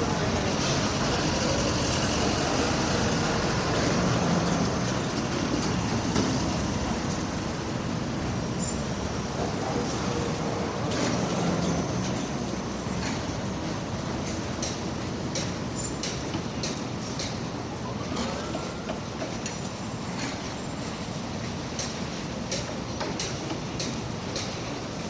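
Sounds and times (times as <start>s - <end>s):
construction machinery: 0.0s - 25.0s
traffic: 0.0s - 25.0s.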